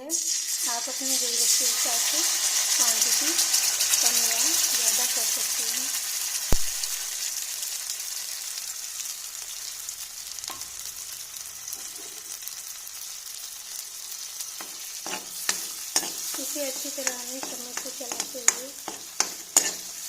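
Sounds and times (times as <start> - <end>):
ginger paste sizzling in ghee: 0.0 - 20.0
sharp knock: 6.5 - 6.8
spoon tapping and scraping pan: 10.5 - 10.7, 11.7 - 12.3, 14.6 - 20.0.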